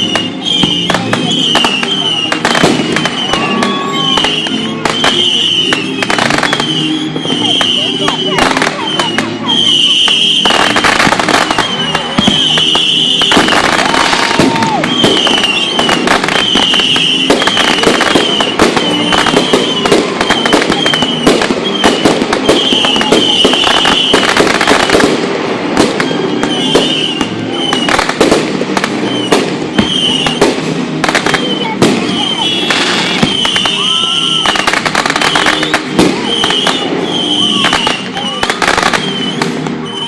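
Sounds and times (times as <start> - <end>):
fireworks bangs and crackling: 0.0 - 40.0.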